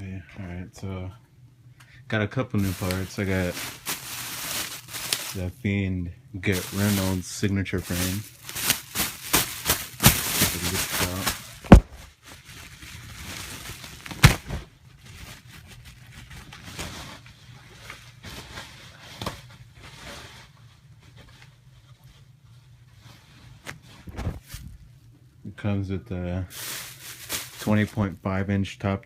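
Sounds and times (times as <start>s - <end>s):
packaging rustling: 2.6s - 5.6s, 6.4s - 18.5s, 26.5s - 28.2s.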